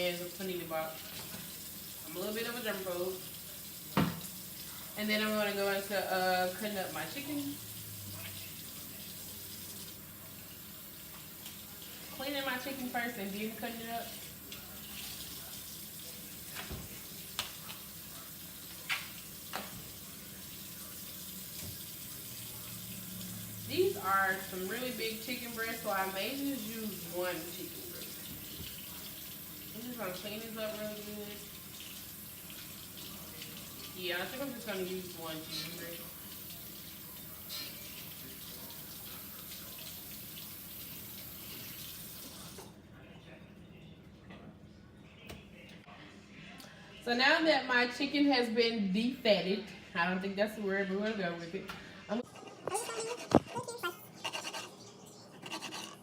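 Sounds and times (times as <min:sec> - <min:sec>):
tap water splashing into sink: 0:01.0 - 0:01.7, 0:03.8 - 0:04.5, 0:16.4 - 0:17.9, 0:18.7 - 0:23.8, 0:27.4 - 0:42.6
tap running into sink: 0:03.9 - 0:04.4, 0:18.9 - 0:19.9.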